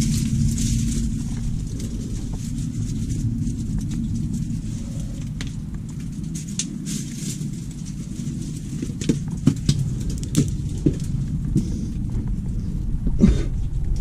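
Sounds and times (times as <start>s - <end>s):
wind rumble on microphone: 0.0s - 14.0s
scrapes and knocks on rock: 3.6s - 11.9s.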